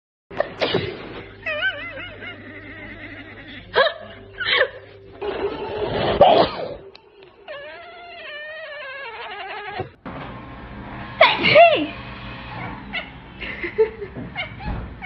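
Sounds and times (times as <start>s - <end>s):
person sneezing: 0.4s - 1.1s.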